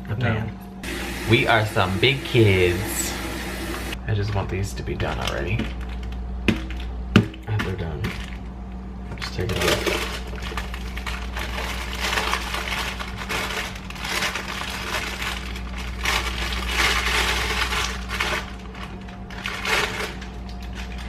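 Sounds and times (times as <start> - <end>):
steady low hum: 0.0 - 21.0
rice treats crackling and crunching: 9.2 - 21.0.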